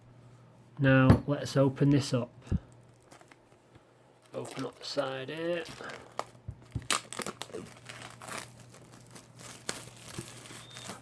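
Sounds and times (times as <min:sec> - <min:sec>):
packaging tearing and crinkling: 0:02.8 - 0:03.5, 0:04.2 - 0:11.0.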